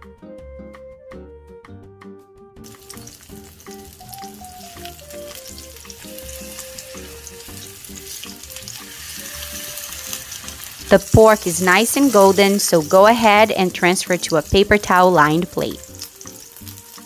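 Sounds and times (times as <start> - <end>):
pork chops sizzling in oil: 2.7 - 14.7, 15.8 - 17.0.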